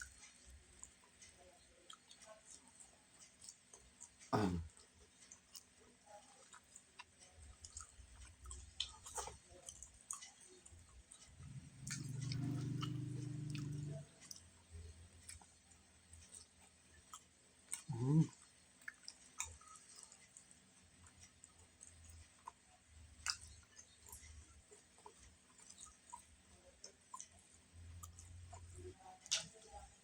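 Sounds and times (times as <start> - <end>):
chewing with wet mouth clicks: 0.0 - 30.0
steady low hum: 7.6 - 19.0.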